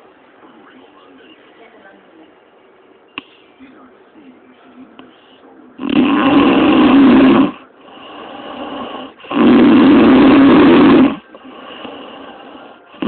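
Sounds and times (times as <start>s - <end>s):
quiet breaths: 3.1s - 13.0s
woman snoring: 5.8s - 13.0s.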